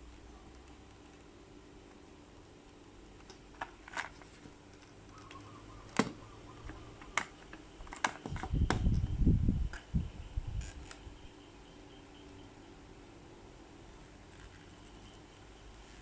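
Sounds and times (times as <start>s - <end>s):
packaging clicks and taps: 4.8s - 8.8s.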